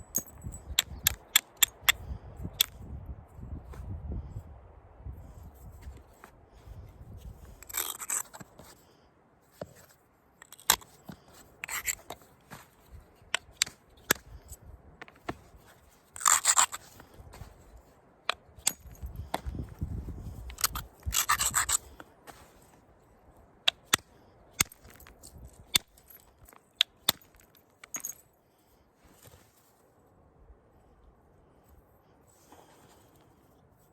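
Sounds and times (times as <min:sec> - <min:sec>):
bone striking and flaking stone: 0:07.3 - 0:08.8, 0:09.6 - 0:22.6, 0:23.7 - 0:28.2
bone scraping stone edge: 0:07.4 - 0:08.8, 0:09.6 - 0:12.7, 0:15.0 - 0:17.5, 0:20.2 - 0:22.6.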